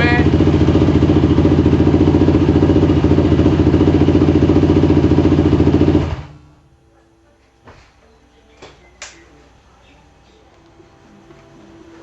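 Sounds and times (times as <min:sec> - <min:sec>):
motorcycle engine running: 0:00.0 - 0:06.7.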